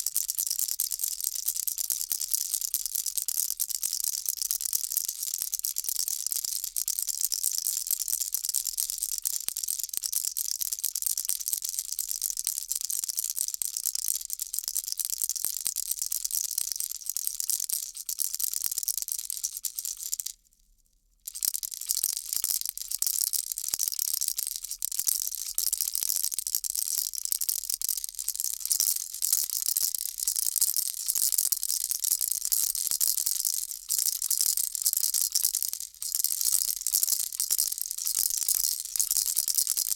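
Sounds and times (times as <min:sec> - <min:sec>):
baby rattle shaking: 0:21.3 - 0:39.9.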